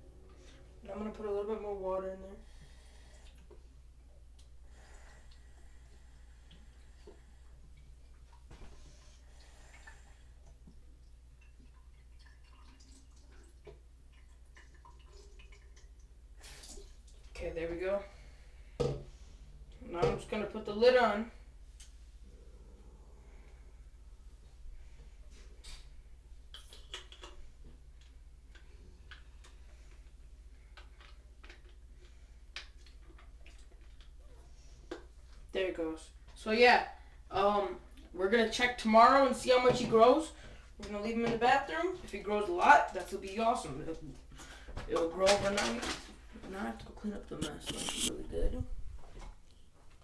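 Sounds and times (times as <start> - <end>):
low steady hum: 0.0 - 50.0
water dripping into plastic tube: 9.4 - 17.4, 26.5 - 34.3.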